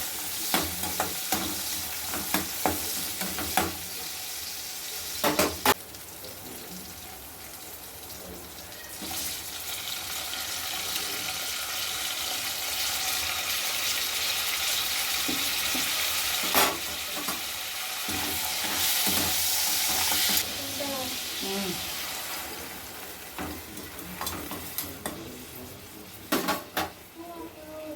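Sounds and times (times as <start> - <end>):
food sizzling in a frying pan: 0.0 - 27.9.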